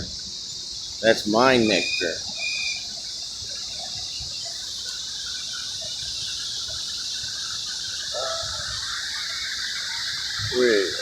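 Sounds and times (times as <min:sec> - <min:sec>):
steady high hiss: 0:00.0 - 0:11.0
bird chirps: 0:00.4 - 0:11.0
wind rumbling on microphone: 0:03.4 - 0:11.0
distant voice: 0:08.1 - 0:11.0.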